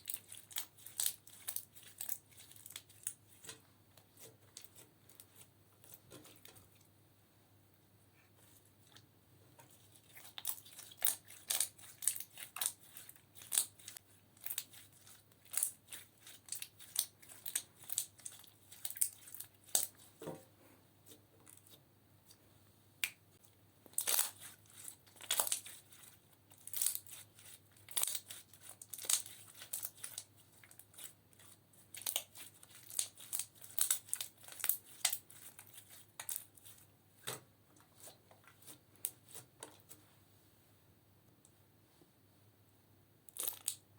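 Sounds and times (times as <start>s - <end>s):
slime popping and crackling: 10.1s - 20.0s, 23.9s - 36.5s, 43.3s - 43.8s.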